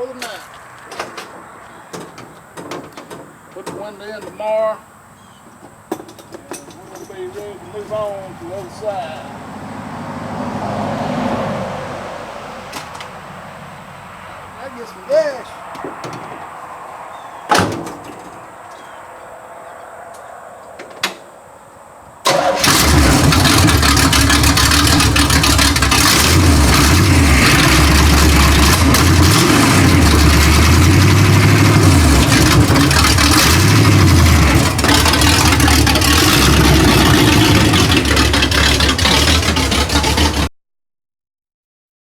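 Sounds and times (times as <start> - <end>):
pickup engine starting and revving: 7.2 - 40.5.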